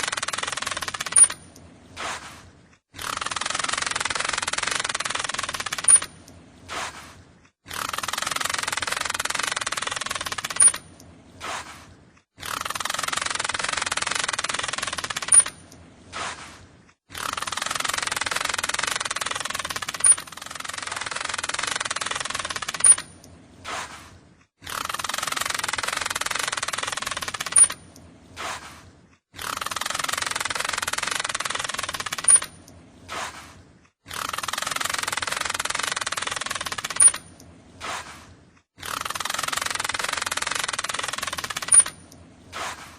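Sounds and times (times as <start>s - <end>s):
sharp click: 0.0s - 2.3s, 3.0s - 6.4s, 7.7s - 11.8s, 12.4s - 16.4s, 29.4s - 33.5s, 34.1s - 38.2s, 38.8s - 42.9s.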